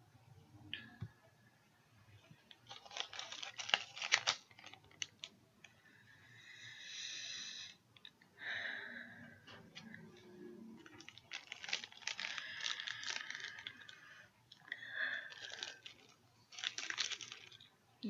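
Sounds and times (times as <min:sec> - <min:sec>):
plastic bag crinkling: 0:02.5 - 0:05.4, 0:09.6 - 0:17.8.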